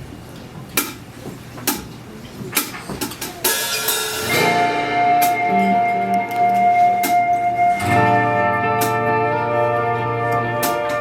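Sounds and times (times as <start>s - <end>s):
band playing sustained notes: 3.5s - 11.0s.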